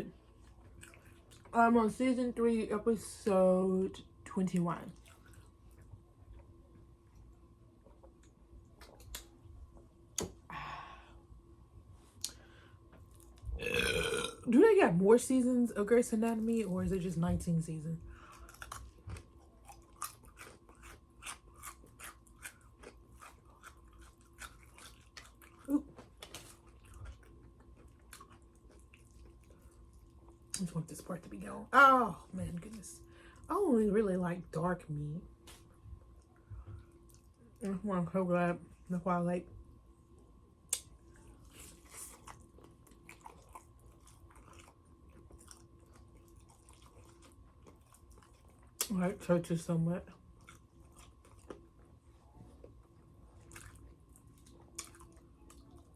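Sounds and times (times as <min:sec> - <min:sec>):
faint steady hum: 0:00.0 - 0:55.9
crunchy chewing of fried chicken: 0:00.1 - 0:01.6, 0:04.9 - 0:09.4, 0:18.1 - 0:30.6, 0:40.1 - 0:48.9, 0:50.0 - 0:55.9.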